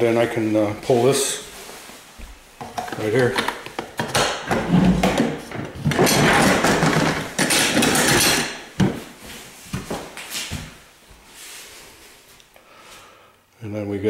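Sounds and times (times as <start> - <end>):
trays clacking into place: 2.6 - 9.0.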